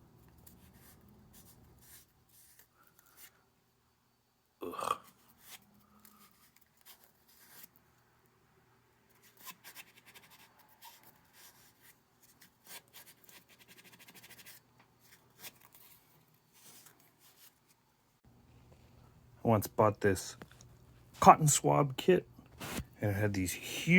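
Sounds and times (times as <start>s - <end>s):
cotton swab rubbing and scratching: 0.2s - 3.4s, 5.1s - 7.8s, 9.1s - 17.8s, 22.5s - 23.0s.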